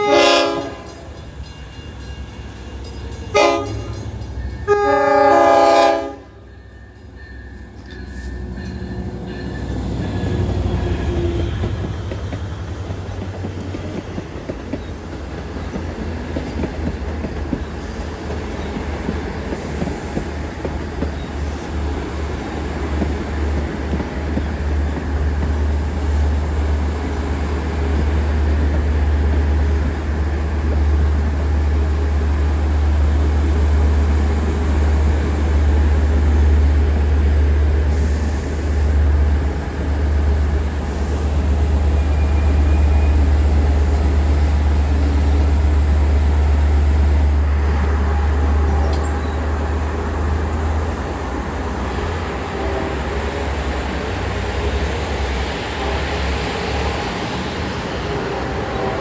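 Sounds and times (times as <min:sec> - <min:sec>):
train horn blasts: 0:00.0 - 0:01.2, 0:03.3 - 0:06.9, 0:52.0 - 0:54.4, 0:57.9 - 0:59.0
train rumble: 0:00.0 - 0:59.0.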